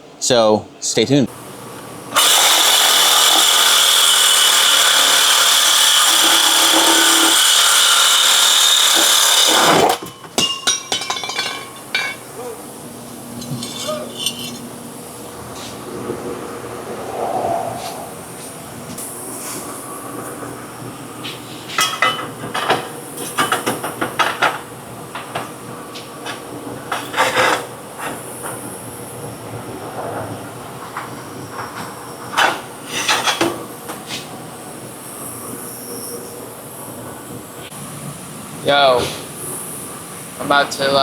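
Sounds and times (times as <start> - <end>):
metal tools clanking: 10.0 - 12.6, 13.4 - 14.8.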